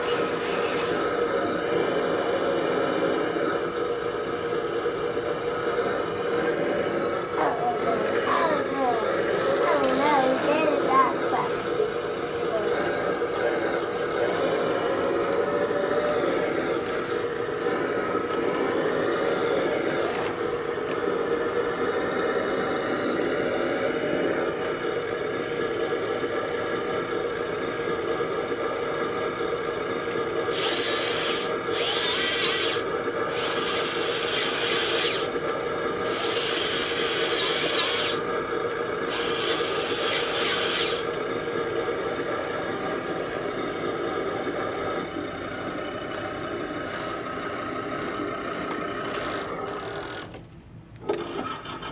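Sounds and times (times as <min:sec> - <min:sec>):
model bulldozer mechanical whine: 0:00.0 - 0:51.9
harsh rasping noise: 0:05.6 - 0:20.5, 0:39.0 - 0:41.1, 0:45.4 - 0:50.4.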